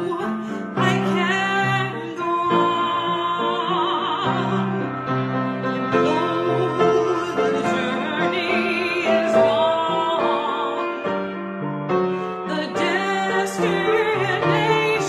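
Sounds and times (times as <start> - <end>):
person singing with vibrato: 0.0 - 11.2, 12.2 - 15.0
piano accompaniment: 0.0 - 15.0.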